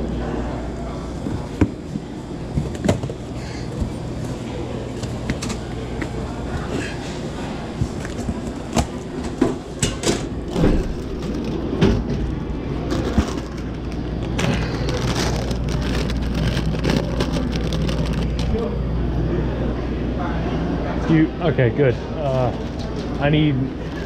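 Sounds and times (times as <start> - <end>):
vending machine hum: 0.0 - 24.0
snack packages knocking and rustling: 12.9 - 18.6.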